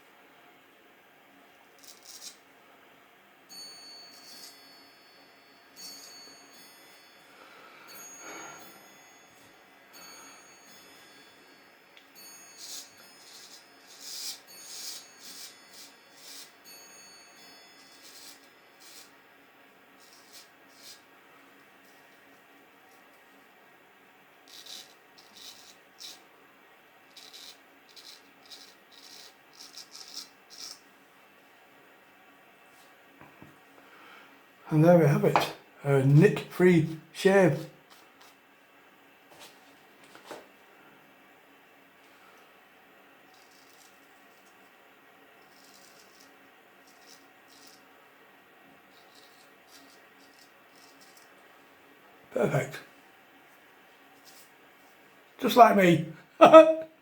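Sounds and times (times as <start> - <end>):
faint chime-like tones: 3.5 - 19.0
razor scraping beard stubble: 12.6 - 16.6, 17.8 - 19.2, 20.0 - 21.0, 27.1 - 30.8, 43.3 - 44.0, 45.5 - 47.9, 49.0 - 51.3.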